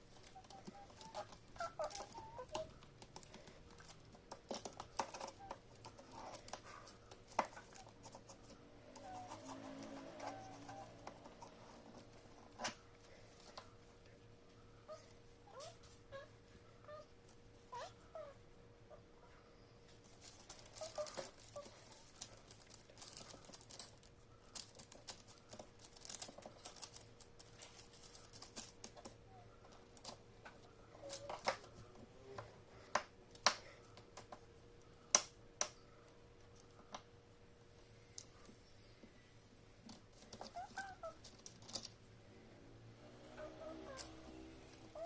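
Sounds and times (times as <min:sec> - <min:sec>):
faint steady hum: 0:00.0 - 0:45.0
pencil scratching on paper: 0:07.4 - 0:12.3.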